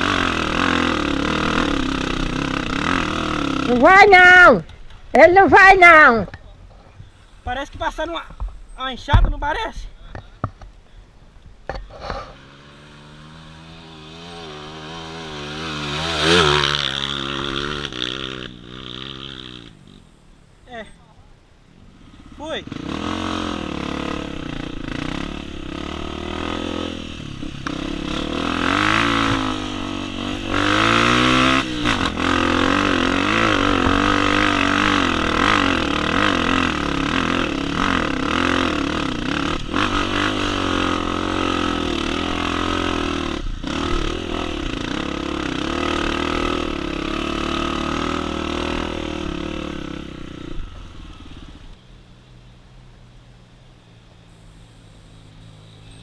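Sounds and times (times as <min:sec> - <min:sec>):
dirt bike engine revving: 0:00.0 - 0:06.2, 0:11.9 - 0:20.1, 0:22.0 - 0:51.8.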